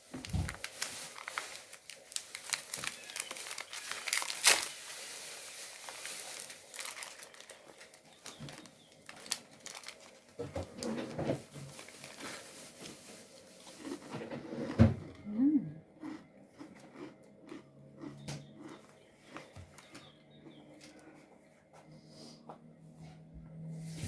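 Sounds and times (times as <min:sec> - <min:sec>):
crinkling and rustling: 0:00.0 - 0:15.1.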